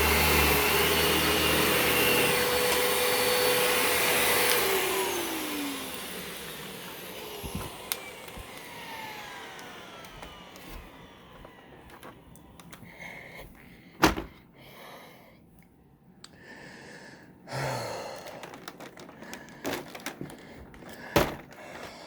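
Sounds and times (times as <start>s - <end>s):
vacuum motor winding down: 0.0s - 12.5s
heavy breathing and sighs: 16.3s - 22.0s.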